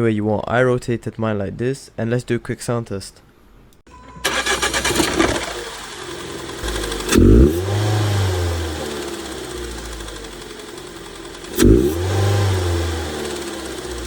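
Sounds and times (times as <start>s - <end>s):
car engine revving: 4.2s - 14.0s.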